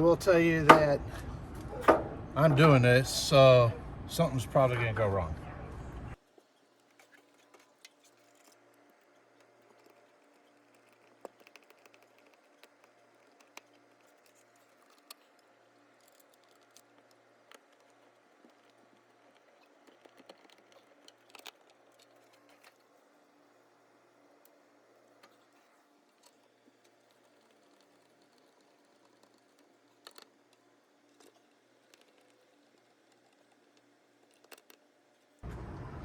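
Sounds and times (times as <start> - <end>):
faint clicks and taps: 6.3 - 23.0.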